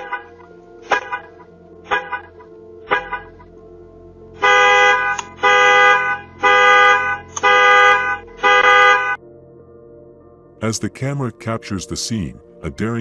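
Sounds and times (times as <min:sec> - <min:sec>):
car alarm horn honking: 0:04.4 - 0:09.2.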